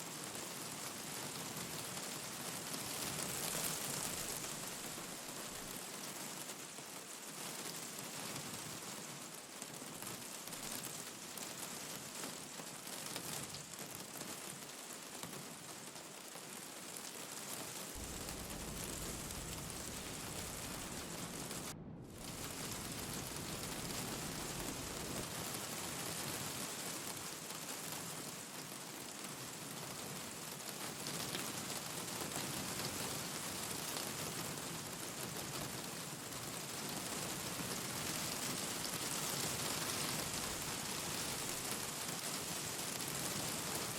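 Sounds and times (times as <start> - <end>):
rain falling: 0.2 - 43.9
wood fire crackling: 3.2 - 5.8, 17.9 - 27.3, 38.0 - 43.9
low rumble: 18.0 - 25.4.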